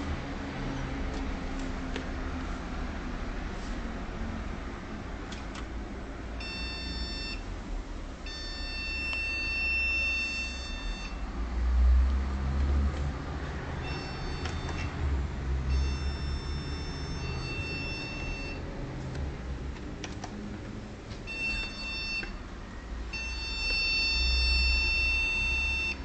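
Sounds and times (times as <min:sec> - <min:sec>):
computer speaker beeps: 0:06.4 - 0:07.4, 0:08.3 - 0:11.2, 0:13.8 - 0:15.0, 0:15.7 - 0:18.6.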